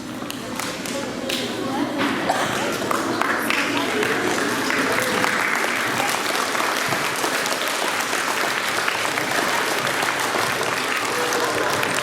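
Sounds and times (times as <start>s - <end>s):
children applauding: 2.9s - 12.0s.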